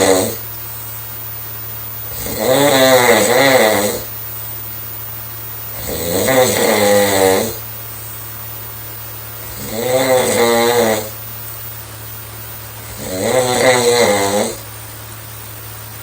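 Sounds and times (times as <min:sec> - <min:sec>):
woman snoring: 0:00.0 - 0:00.4, 0:02.1 - 0:04.1, 0:05.7 - 0:07.6, 0:09.4 - 0:11.2, 0:12.8 - 0:14.6
steady low hum: 0:00.0 - 0:16.0.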